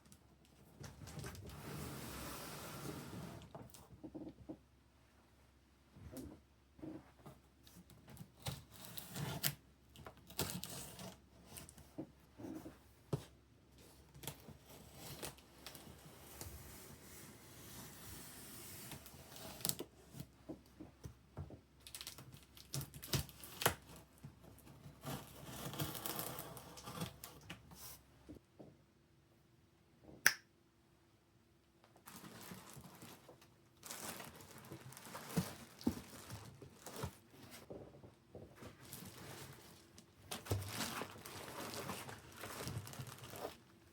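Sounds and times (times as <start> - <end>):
rustling and tearing: 21.8 - 27.4, 32.0 - 37.7, 38.6 - 43.7.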